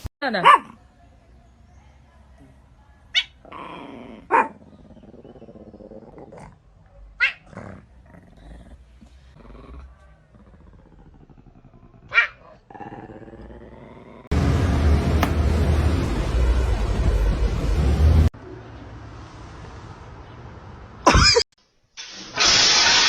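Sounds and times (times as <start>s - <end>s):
dog barking: 0.4s - 0.8s, 4.3s - 4.6s, 7.2s - 7.5s, 12.1s - 12.5s
dog growling: 3.4s - 14.3s.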